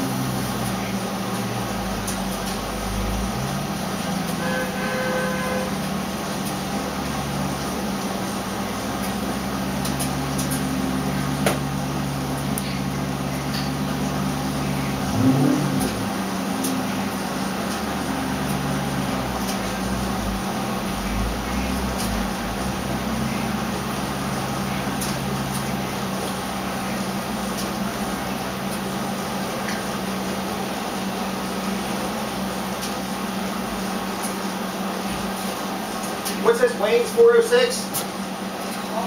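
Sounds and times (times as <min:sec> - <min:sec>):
engine running on a dyno: 0:00.0 - 0:39.0.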